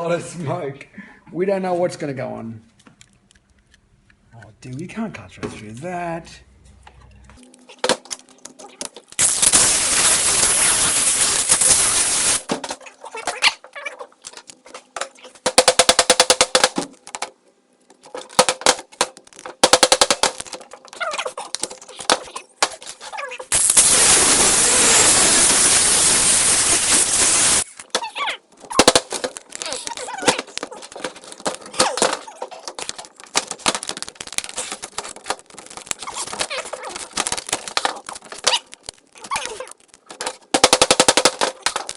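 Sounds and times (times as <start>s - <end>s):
power cutting tool cutting: 23.6s - 27.6s.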